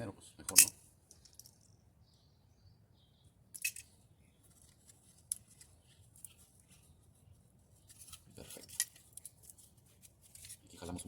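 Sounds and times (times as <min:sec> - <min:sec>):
small parts clicking and scraping: 0:00.5 - 0:01.7, 0:03.5 - 0:06.8, 0:07.8 - 0:10.7.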